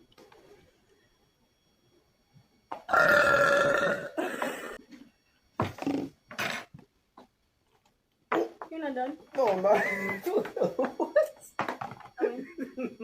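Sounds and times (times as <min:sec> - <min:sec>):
person burping: 0:02.8 - 0:04.8.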